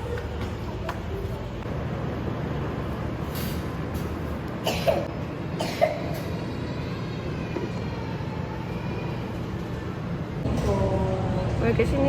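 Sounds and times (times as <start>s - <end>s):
person coughing: 4.6s - 6.2s.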